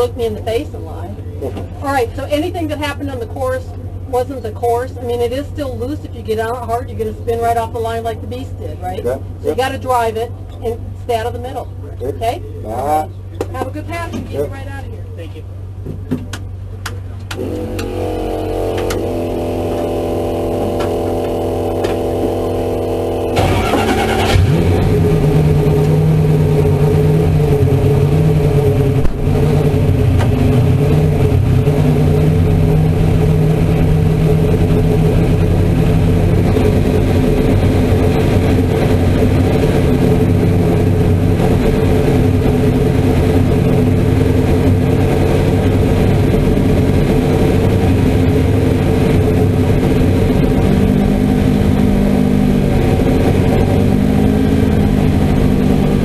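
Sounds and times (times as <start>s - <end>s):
race car engine at full throttle: 0.0s - 56.0s.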